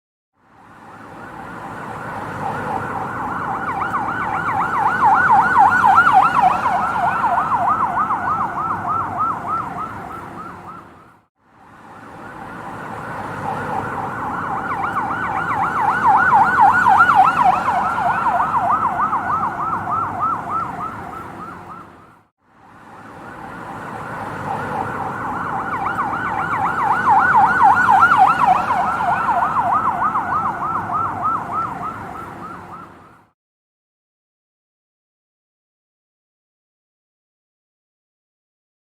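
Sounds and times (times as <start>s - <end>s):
ambulance siren yelping wail: 1.2s - 11.0s, 12.2s - 22.1s, 23.5s - 33.2s.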